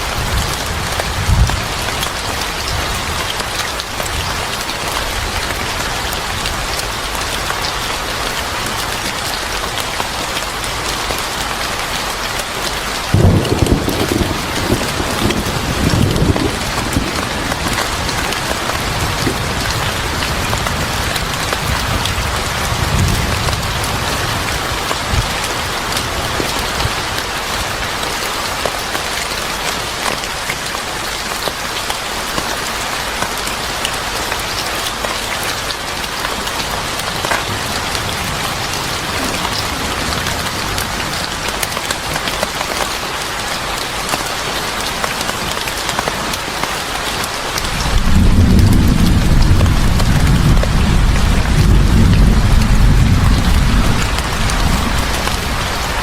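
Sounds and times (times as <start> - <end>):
sharp ticks of raindrops: 0.0 - 56.0
steady rain falling: 0.0 - 56.0.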